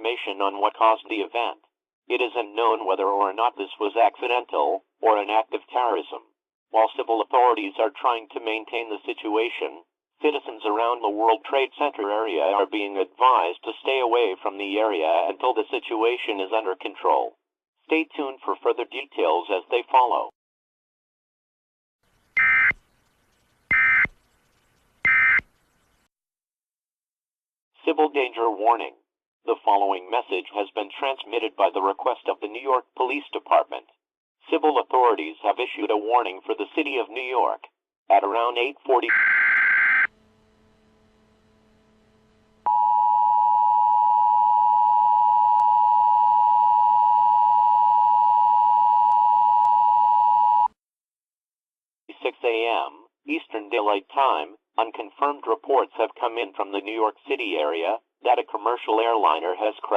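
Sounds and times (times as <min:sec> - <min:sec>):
emergency alert tone: 0:22.4 - 0:22.8, 0:23.7 - 0:24.1, 0:25.1 - 0:25.4, 0:39.0 - 0:50.7
digital data tone bursts: 0:25.0 - 0:25.4.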